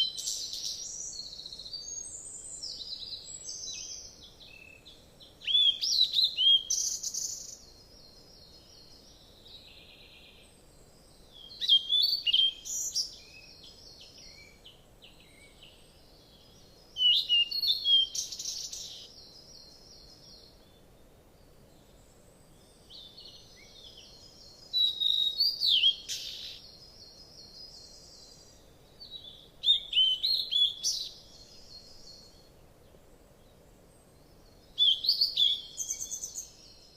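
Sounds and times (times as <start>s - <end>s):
faint steady hiss: 0.0s - 36.9s
songbird whistles and trill: 5.4s - 7.6s, 11.3s - 14.6s, 16.9s - 20.3s, 22.9s - 32.4s, 34.8s - 36.9s.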